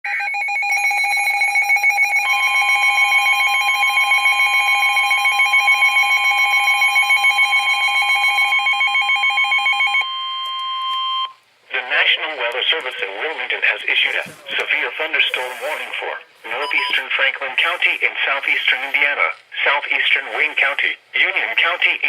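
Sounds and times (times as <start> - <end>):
warbling electronic alarm: 0.1 - 11.4.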